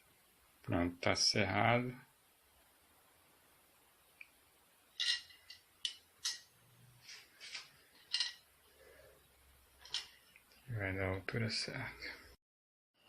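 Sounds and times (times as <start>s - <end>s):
hand tools clicking and clinking: 5.0s - 6.5s, 7.5s - 8.4s.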